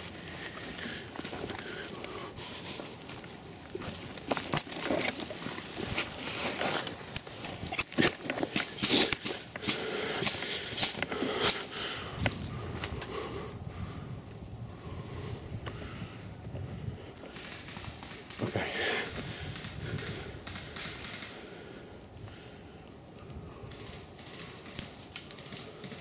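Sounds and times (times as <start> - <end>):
leaves rustling and crackling: 0.0 - 12.9.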